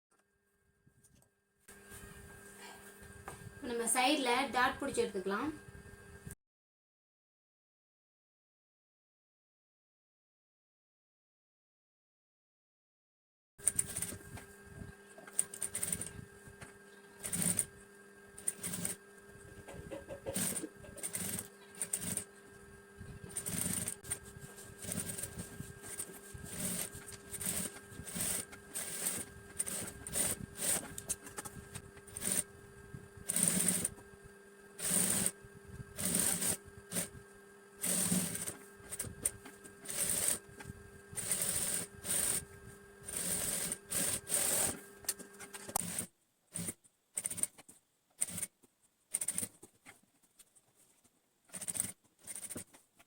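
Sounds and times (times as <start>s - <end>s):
sewing machine stitching: 13.6s - 14.2s, 15.3s - 16.2s, 17.2s - 17.8s, 18.4s - 19.0s, 20.1s - 22.3s, 23.2s - 32.5s, 33.2s - 34.0s, 34.8s - 35.4s, 36.0s - 37.2s, 37.8s - 40.4s, 41.1s - 47.6s, 48.2s - 49.6s, 51.5s - 52.8s
sewing machine hum: 13.6s - 47.6s, 48.2s - 48.5s, 49.1s - 49.6s, 51.5s - 52.6s.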